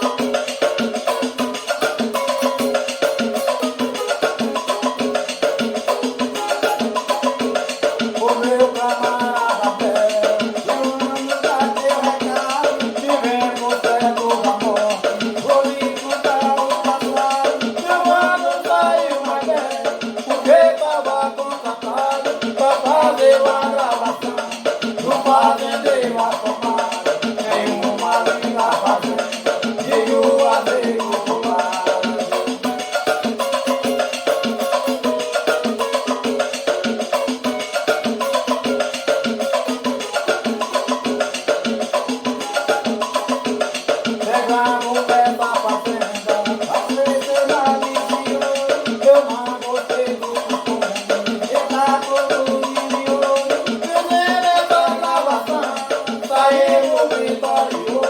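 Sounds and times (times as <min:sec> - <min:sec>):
melodic instrument: 0:00.0 - 0:09.7, 0:24.5 - 0:44.2
quick steady percussion: 0:00.0 - 0:58.0.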